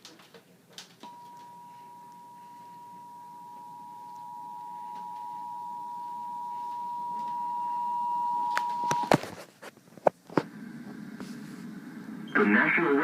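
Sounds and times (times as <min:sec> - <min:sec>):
two steady alert tones: 0:01.0 - 0:09.1.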